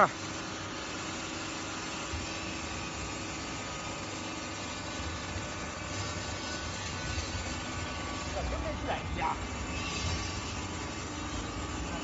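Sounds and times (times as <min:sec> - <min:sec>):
baler machine hum: 0:00.0 - 0:12.0.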